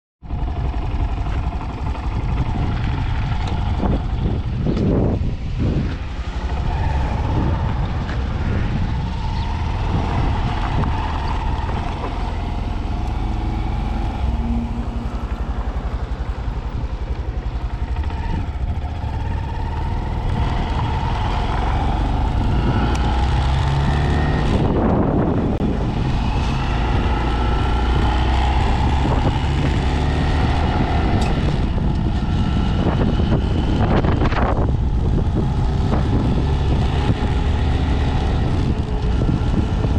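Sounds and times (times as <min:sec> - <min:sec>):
motorcycle engine accelerating: 0:00.2 - 0:39.9
wind buffeting microphone: 0:00.2 - 0:39.9.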